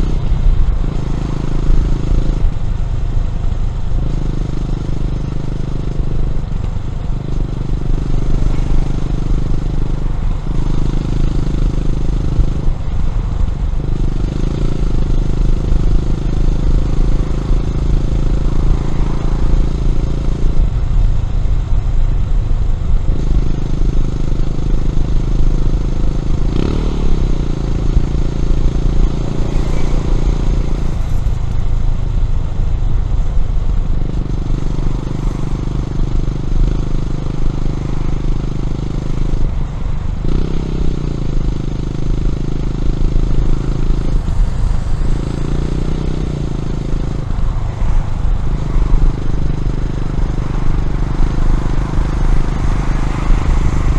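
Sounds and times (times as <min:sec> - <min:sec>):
motorcycle engine under load: 0:00.0 - 0:53.9.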